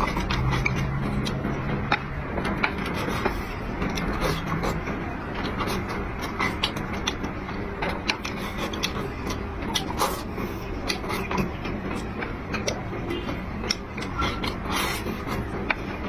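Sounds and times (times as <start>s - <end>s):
steady background noise: 0.0s - 16.0s
wet chewing clicks: 0.0s - 16.0s.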